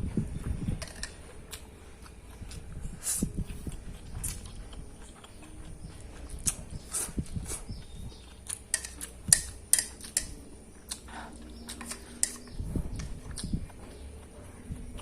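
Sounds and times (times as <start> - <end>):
person chewing noodles: 0.5 - 15.0
cutlery clinking: 0.8 - 1.2, 8.5 - 10.4, 11.7 - 13.2.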